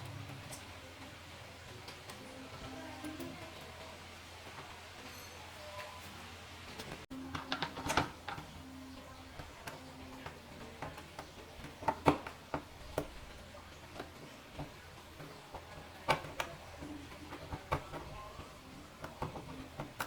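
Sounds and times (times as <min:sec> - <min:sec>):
plastic parts clicking: 0:06.8 - 0:20.0.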